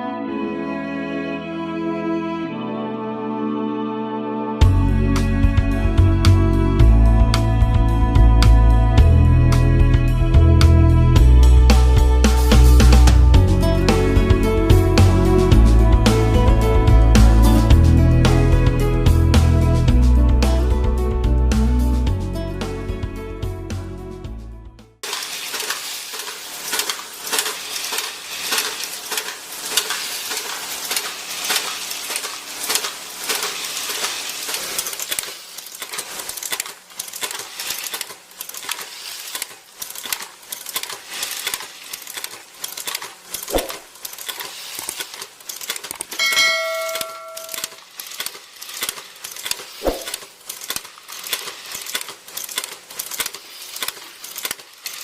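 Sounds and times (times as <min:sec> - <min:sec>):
metal parts clinking in machinery: 0:25.0 - 0:55.0
bell-like ding of metal part: 0:46.2 - 0:47.8.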